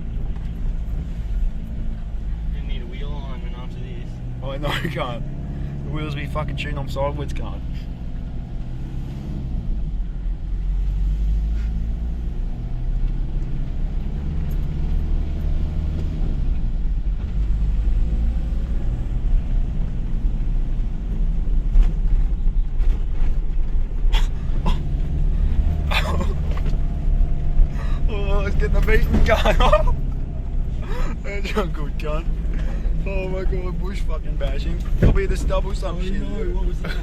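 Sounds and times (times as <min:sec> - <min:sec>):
engine and tyres rumbling: 0:00.0 - 0:37.0
vehicle knocks over bumps: 0:34.8 - 0:35.6.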